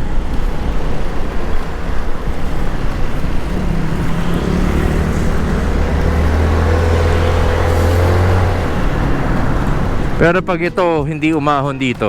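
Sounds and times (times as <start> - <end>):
scooter engine under throttle: 0.0 - 10.2
wind and road noise: 0.0 - 11.6.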